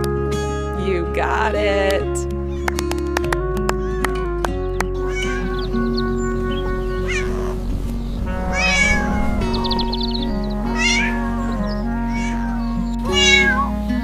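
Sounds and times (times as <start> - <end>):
gentle background music: 0.0 - 14.0
cats meowing: 5.0 - 6.0, 7.0 - 7.6, 8.3 - 13.8.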